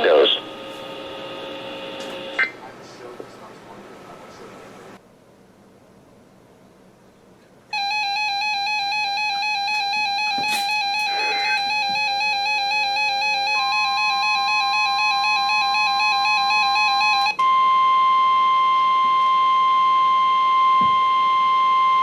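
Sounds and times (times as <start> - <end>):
steady high warning beep: 7.7 - 22.0.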